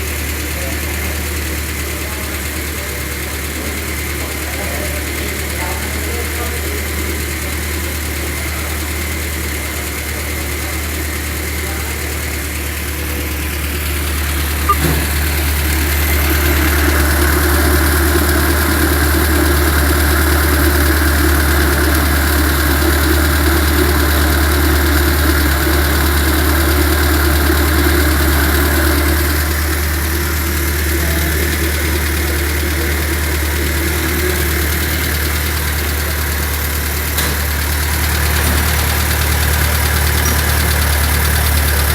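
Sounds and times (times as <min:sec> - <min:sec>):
car engine idling: 0:00.0 - 0:41.9
short click: 0:14.7 - 0:15.2.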